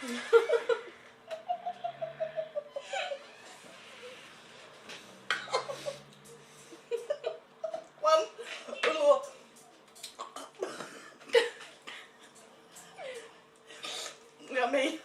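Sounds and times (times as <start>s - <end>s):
person laughing: 0.0s - 3.4s.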